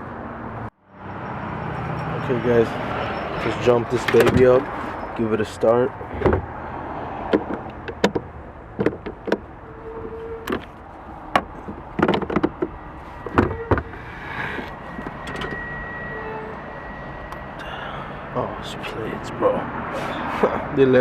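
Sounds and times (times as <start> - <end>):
car door clicks and knocks: 6.0 - 6.5, 7.3 - 9.5, 11.3 - 12.7
high electronic tone: 12.8 - 18.5
short beeps: 15.2 - 18.0.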